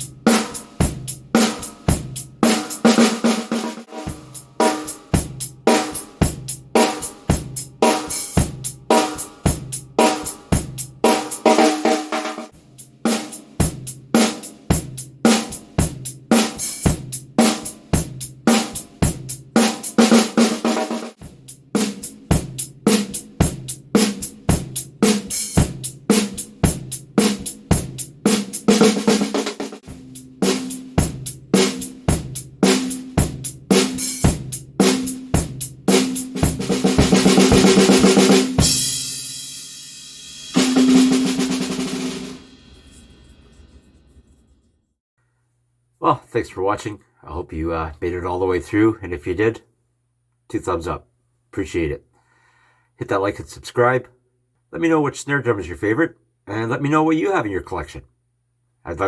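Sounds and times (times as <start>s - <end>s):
drum kit groove: 0.0s - 43.2s.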